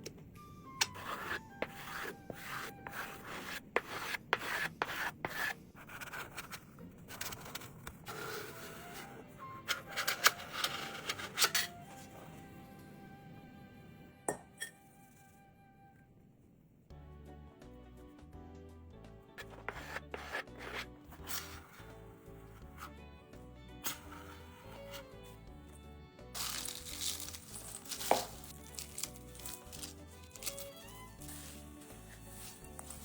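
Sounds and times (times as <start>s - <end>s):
soft background music: 0.0s - 16.3s, 16.9s - 33.0s
rubbing and scraping: 0.8s - 11.7s, 19.4s - 23.0s, 23.8s - 25.2s, 26.4s - 33.0s.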